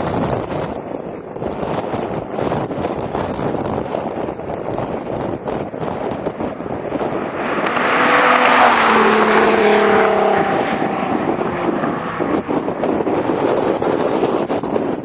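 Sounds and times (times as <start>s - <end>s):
wind buffeting microphone: 0.0s - 15.0s
car exhaust driving past: 5.7s - 13.8s.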